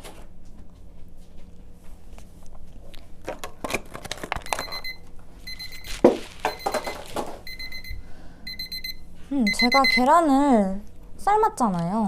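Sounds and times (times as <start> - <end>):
kitchen timer beeping: 4.5 - 5.9, 6.5 - 10.4.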